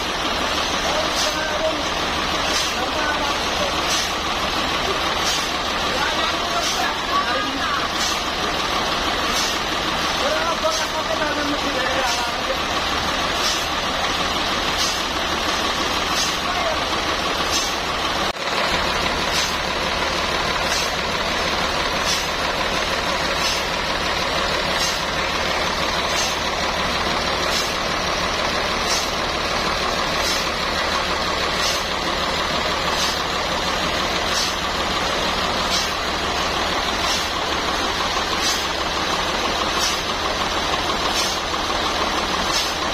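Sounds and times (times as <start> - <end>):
sawmill machinery running: 0.0 - 42.9.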